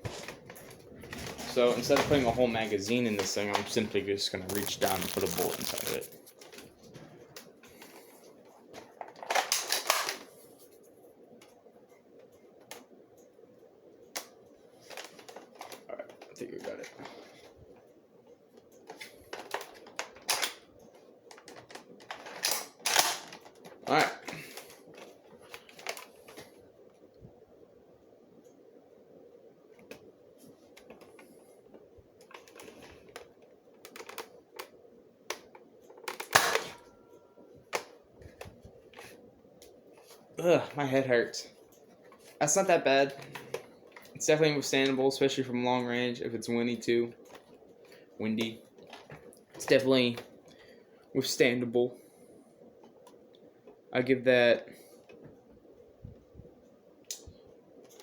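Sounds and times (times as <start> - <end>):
rustling: 4.4 - 8.7
toy blaster plastic clicks and rattles: 4.5 - 6.0.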